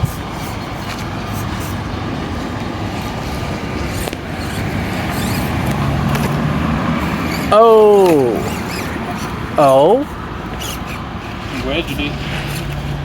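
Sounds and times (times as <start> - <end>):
dense continuous noise: 0.0 - 13.0
small electric motor and gears: 0.0 - 13.0.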